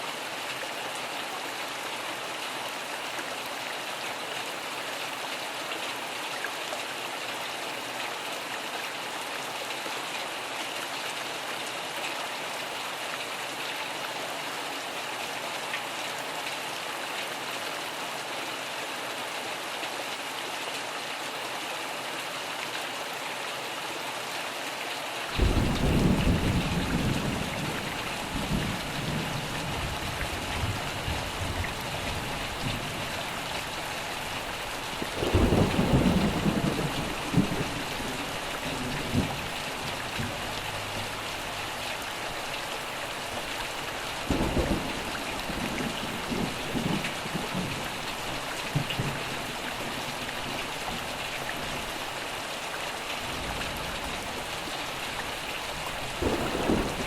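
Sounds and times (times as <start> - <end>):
steady rain: 0.0 - 57.0
rolling thunder: 56.0 - 57.0.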